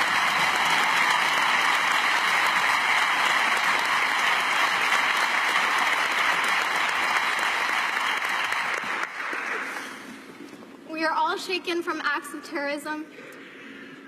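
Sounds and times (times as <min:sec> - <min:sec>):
audience applauding: 0:00.0 - 0:10.3.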